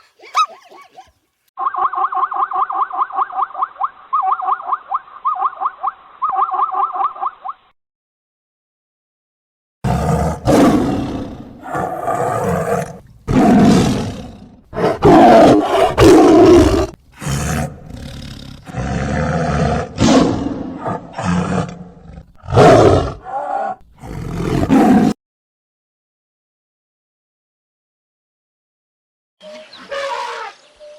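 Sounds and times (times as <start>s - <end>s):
tiger roaring: 9.9s - 25.2s.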